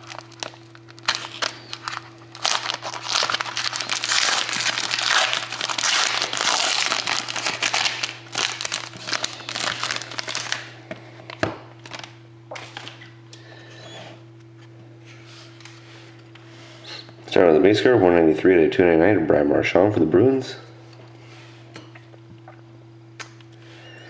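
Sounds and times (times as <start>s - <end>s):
plastic wrapping crinkling: 0.0s - 10.8s, 11.8s - 13.0s.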